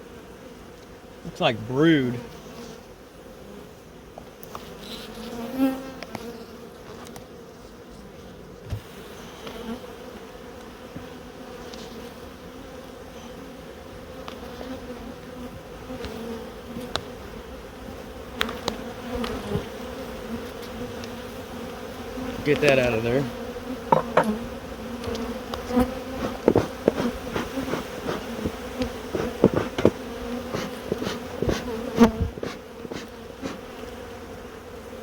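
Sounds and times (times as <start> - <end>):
bees buzzing: 0.0 - 35.0
light knocks and clicks: 23.9 - 24.3.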